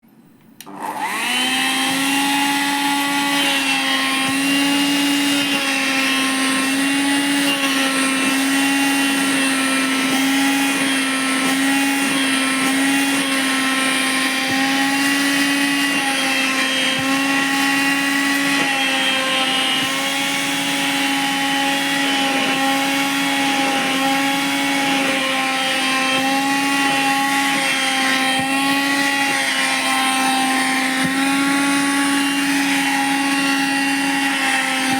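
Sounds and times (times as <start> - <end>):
vacuum cleaner running: 0.6 - 34.9.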